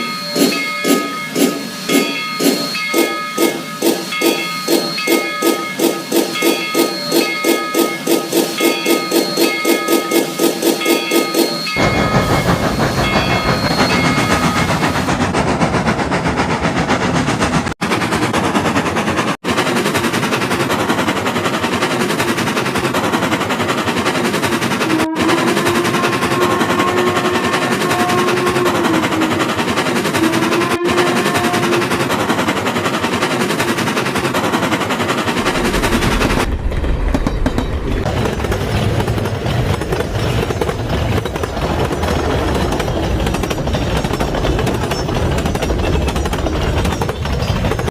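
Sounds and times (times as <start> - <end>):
wavering whistle-like tone: 0.0 - 15.1
train rattling chug: 0.0 - 47.9.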